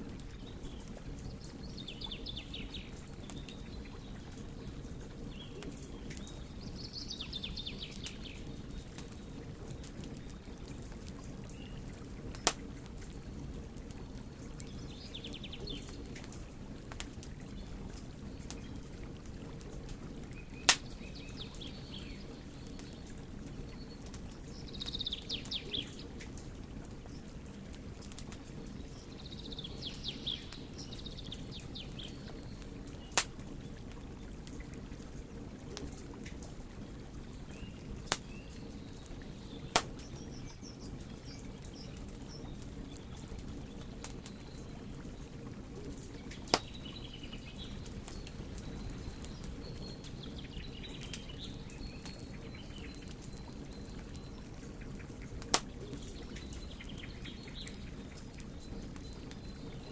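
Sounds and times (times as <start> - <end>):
birds chirping faintly: 0.0 - 59.9
wood fire crackling: 0.0 - 59.9
fire popping sharply: 39.6 - 40.0, 55.4 - 56.4.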